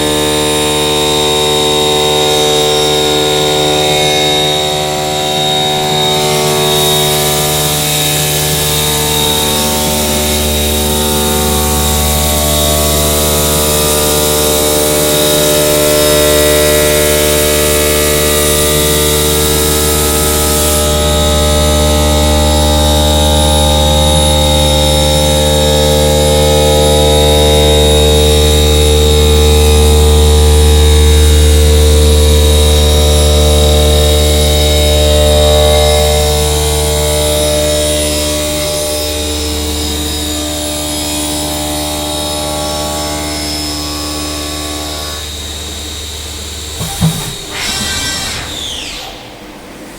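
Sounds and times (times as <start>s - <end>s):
grinding machine whine and hum: 0.0s - 49.9s
short knock: 46.8s - 49.0s.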